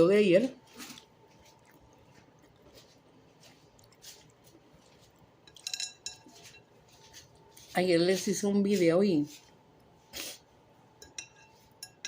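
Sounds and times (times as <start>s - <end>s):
person chewing: 0.5s - 7.7s
tableware clink: 5.5s - 6.7s, 11.0s - 12.0s.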